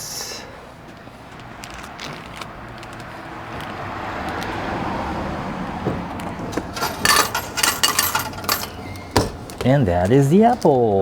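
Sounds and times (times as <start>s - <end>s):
vehicle passing by: 1.2s - 9.1s
vending machine dropping package: 6.5s - 9.8s.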